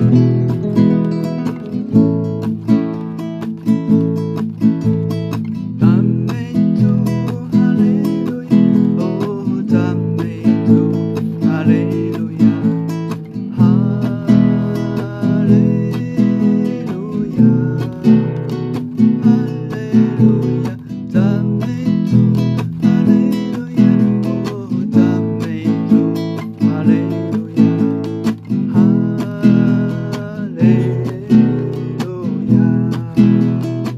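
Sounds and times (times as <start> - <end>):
acoustic guitar strumming: 0.0 - 33.9.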